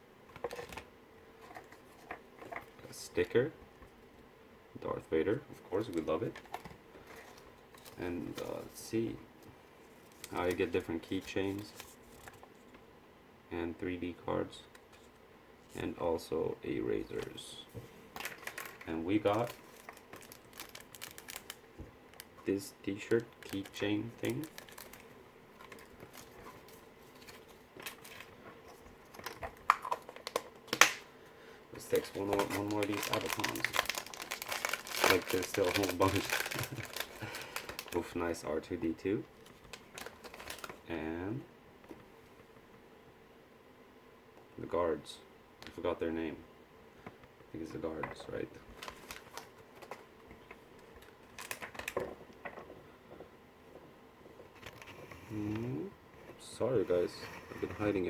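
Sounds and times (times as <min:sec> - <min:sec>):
plastic toys rustling: 0:01.4 - 0:02.8, 0:05.8 - 0:08.9, 0:18.1 - 0:30.8, 0:31.8 - 0:38.1, 0:39.4 - 0:40.8, 0:48.7 - 0:53.2
light clicks and crinkles: 0:09.4 - 0:12.8, 0:18.2 - 0:22.5, 0:23.1 - 0:31.0, 0:31.8 - 0:38.0, 0:39.4 - 0:40.8, 0:48.0 - 0:55.7.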